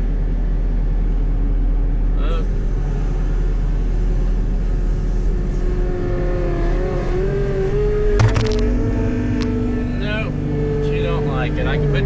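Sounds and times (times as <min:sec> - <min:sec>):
sharp cracks: 0:08.2 - 0:08.8.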